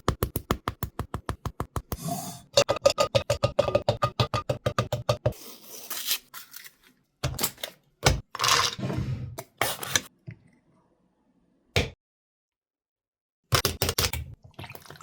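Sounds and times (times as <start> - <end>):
food handling scrapes and rubs: 5.3 - 7.0.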